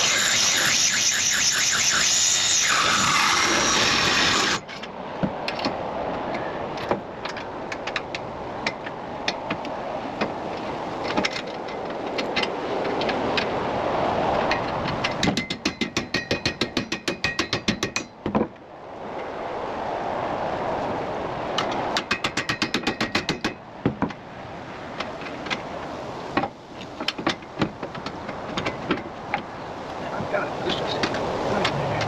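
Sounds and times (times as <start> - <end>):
steady rushing noise: 0.0 - 32.0.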